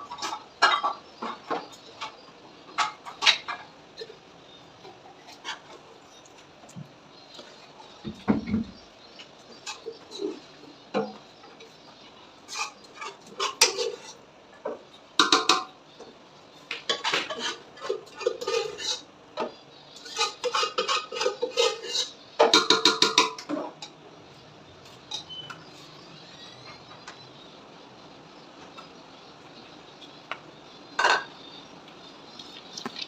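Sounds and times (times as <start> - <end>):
metal utensil scraping cooking pot: 0.0 - 4.2, 4.8 - 6.2, 9.5 - 10.6, 12.4 - 15.7, 16.9 - 24.0.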